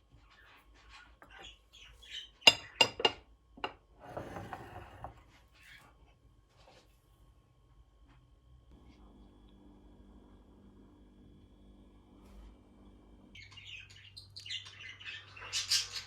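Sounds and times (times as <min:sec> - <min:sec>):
dishes clinking: 0:02.5 - 0:05.2
dishes scraping rattle: 0:02.5 - 0:05.2.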